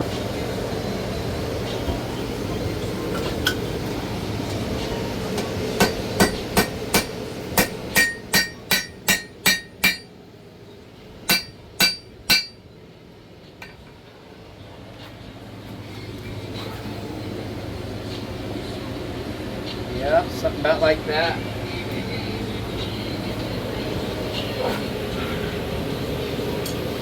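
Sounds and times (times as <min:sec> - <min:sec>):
hammer striking metal on anvil: 0:05.8 - 0:10.2, 0:11.3 - 0:12.6.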